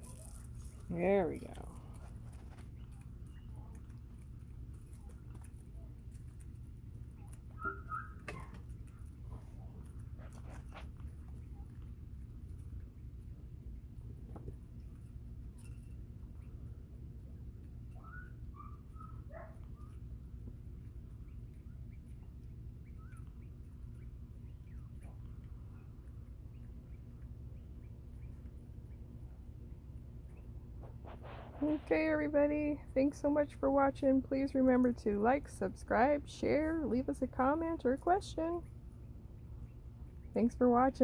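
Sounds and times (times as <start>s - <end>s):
quail pecking clicks and taps: 0.0s - 31.6s
low steady hum: 0.0s - 41.0s
soft short bird peeps: 2.6s - 4.0s, 7.2s - 8.6s, 17.9s - 20.1s, 21.2s - 31.8s
quail whistled calls: 7.5s - 8.5s.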